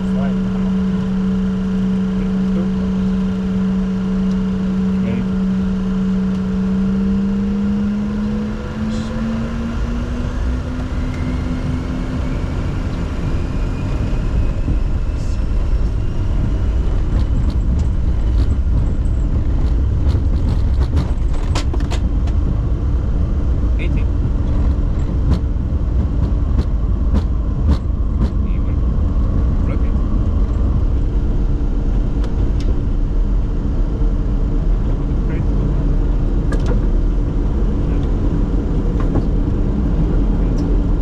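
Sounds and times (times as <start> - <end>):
deep rumble: 0.0 - 41.0
jet engines spooling up: 8.2 - 20.0
clicks and rattles: 17.1 - 22.4.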